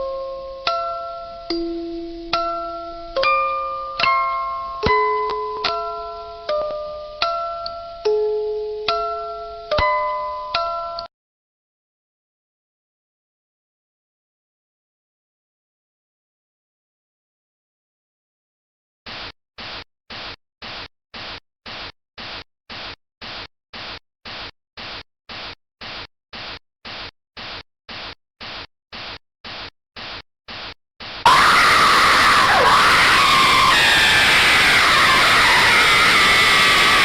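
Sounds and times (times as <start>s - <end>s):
harsh noise blast with shrill tones: 30.0s - 37.0s.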